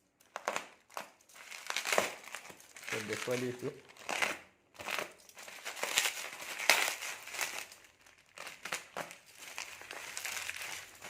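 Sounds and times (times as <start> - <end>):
plastic packaging crinkling: 0.0 - 11.0.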